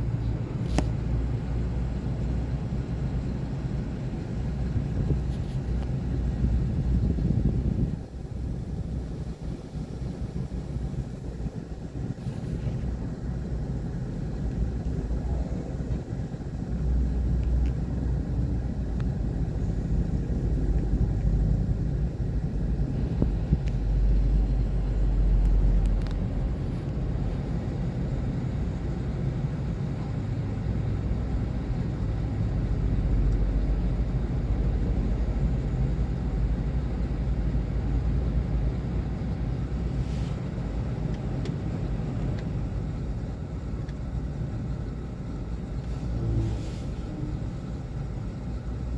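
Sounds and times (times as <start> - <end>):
excavator diesel engine running: 0.0 - 48.9.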